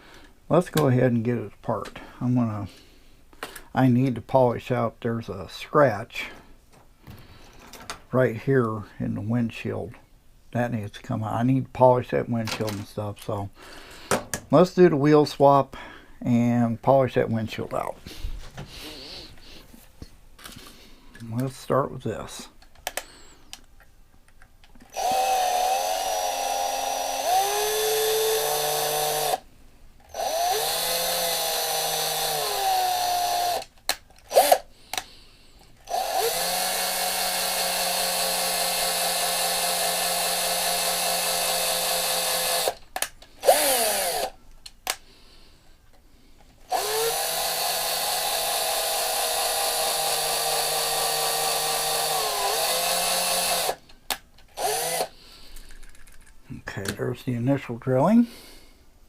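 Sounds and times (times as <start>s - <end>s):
electric drill drilling metal: 24.9s - 29.4s, 30.1s - 33.7s, 34.3s - 34.7s, 35.9s - 42.8s, 43.4s - 44.4s, 46.7s - 53.8s, 54.6s - 55.1s.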